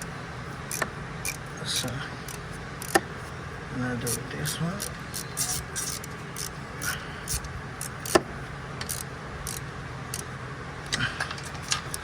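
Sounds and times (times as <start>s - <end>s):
wrench clicking on bolts: 0.7s - 3.0s, 4.1s - 8.2s, 8.8s - 10.3s, 11.4s - 12.0s.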